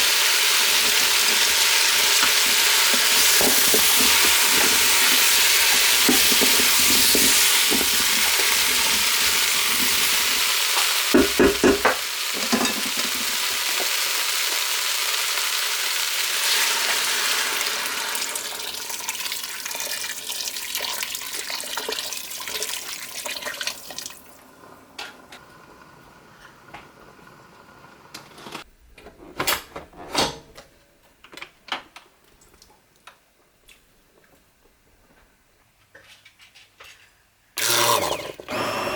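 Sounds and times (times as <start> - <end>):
food sizzling in a pot: 0.0 - 24.4
spoon knocking against pot: 11.1 - 13.2.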